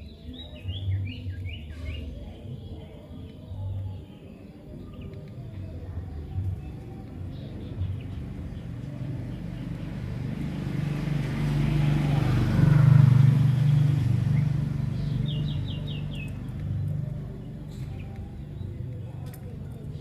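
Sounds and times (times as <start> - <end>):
vehicle passing by: 7.8 - 17.9
bird chirping: 13.4 - 17.0.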